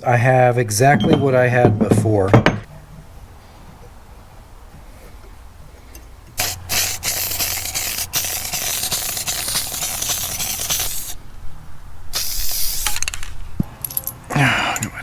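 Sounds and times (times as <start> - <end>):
aerosol spray can hissing: 6.4 - 11.2, 12.2 - 13.0.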